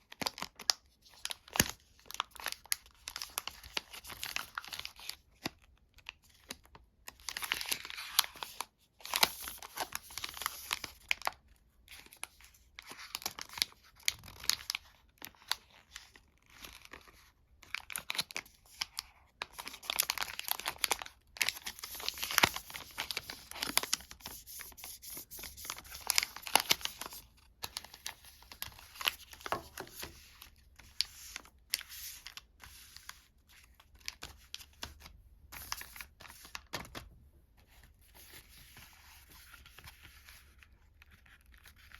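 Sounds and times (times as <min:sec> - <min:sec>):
wrappers crinkling and tearing: 0:17.7 - 0:35.0.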